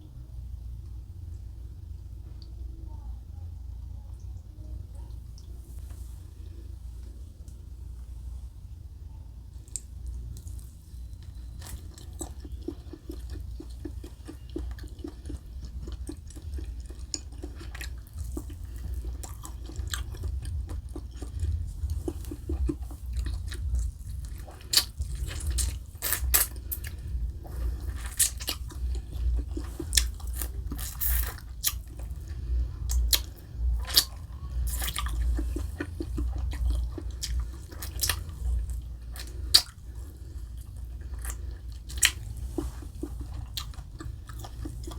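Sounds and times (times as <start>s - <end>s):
chewing food: 9.5s - 44.9s.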